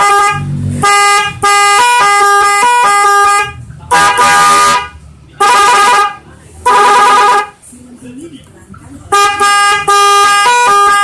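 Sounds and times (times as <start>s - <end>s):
electric horn toots: 0.0s - 7.5s, 9.1s - 11.0s.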